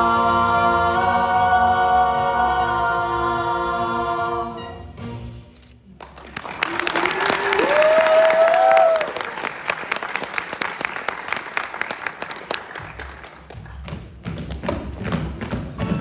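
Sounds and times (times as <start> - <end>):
audience applauding: 6.0 - 13.8.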